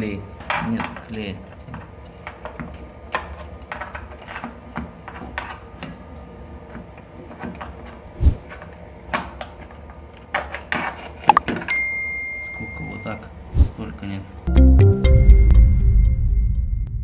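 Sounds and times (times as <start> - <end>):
tools scraping ceramic tiles: 0.4 - 6.0, 10.4 - 11.7.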